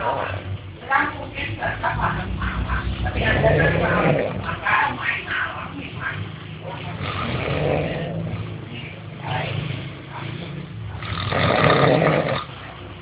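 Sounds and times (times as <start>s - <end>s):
steady low hum: 0.0s - 13.0s
person snoring: 3.2s - 4.6s, 7.0s - 8.5s, 10.3s - 12.5s.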